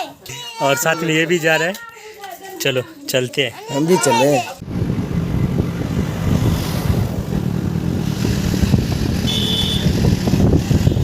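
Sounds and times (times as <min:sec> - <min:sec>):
engine and wind rumble: 0:04.6 - 0:11.0
high-pitched horn beep: 0:09.2 - 0:10.0.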